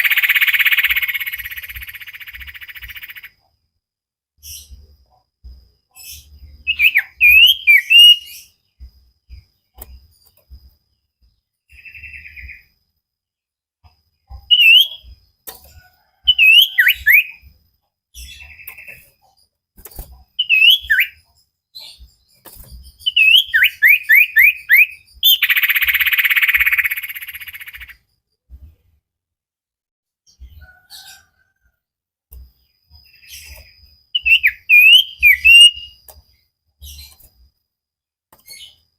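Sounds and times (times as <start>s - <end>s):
harsh buzzy bird trill: 0.0s - 3.5s, 6.0s - 8.7s, 14.3s - 15.3s, 16.0s - 17.5s, 20.0s - 22.1s, 22.9s - 28.1s, 33.1s - 36.1s
bird singing whistled notes: 6.0s - 8.7s, 11.7s - 12.7s, 14.4s - 15.2s, 16.2s - 17.5s, 20.3s - 21.2s, 22.9s - 28.0s, 33.1s - 36.1s.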